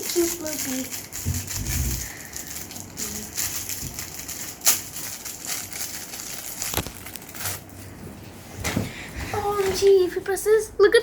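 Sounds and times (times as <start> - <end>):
plastic crinkling: 0.0 - 8.0.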